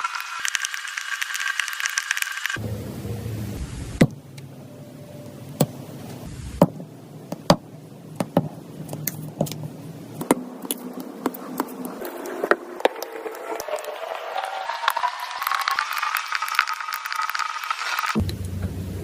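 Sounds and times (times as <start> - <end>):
low steady hum: 2.6 - 12.0, 18.2 - 19.0.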